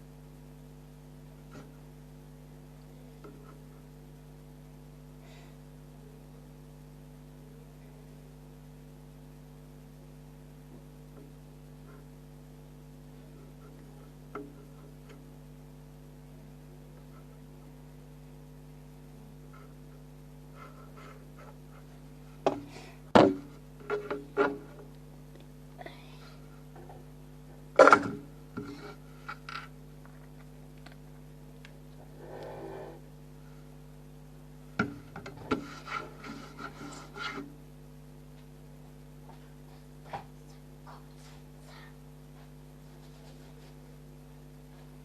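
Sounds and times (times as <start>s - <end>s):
electrical hum: 0.0s - 45.0s
loud knocks and bumps: 22.4s - 24.6s.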